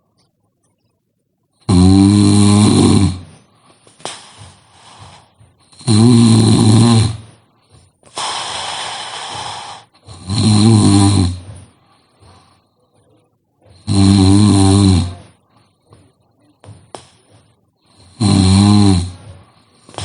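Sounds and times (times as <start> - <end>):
person snoring loudly: 1.7 - 3.4, 4.1 - 7.3, 8.2 - 11.6, 13.8 - 15.3, 18.0 - 20.0
soft breathing: 3.1 - 10.3, 11.2 - 13.9, 14.6 - 18.2, 19.0 - 20.0.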